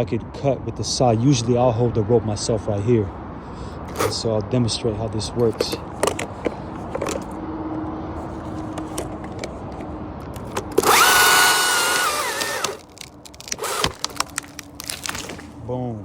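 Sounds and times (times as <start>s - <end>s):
chainsaw cutting branch: 10.4s - 15.5s.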